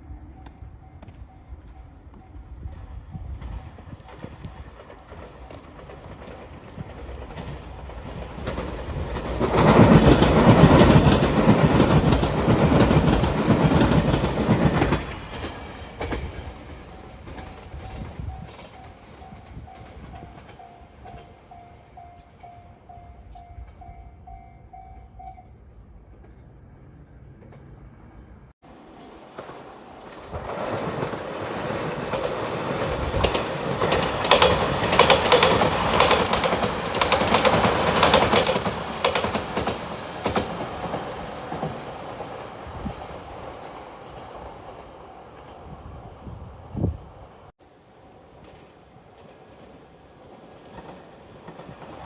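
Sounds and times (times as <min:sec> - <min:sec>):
level-crossing warning bell: 0:00.3 - 0:06.5, 0:16.7 - 0:25.6
train wheels clattering over rail joints: 0:03.4 - 0:21.3, 0:28.9 - 0:42.5.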